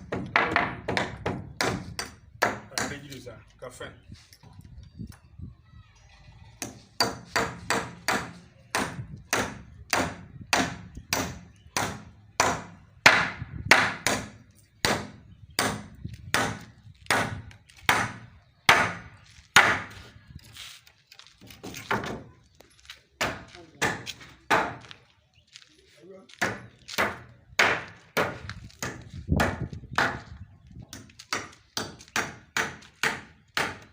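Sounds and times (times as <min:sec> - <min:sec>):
tool striking timber: 0:00.0 - 0:03.1, 0:06.6 - 0:20.0, 0:26.4 - 0:30.3, 0:30.9 - 0:33.9.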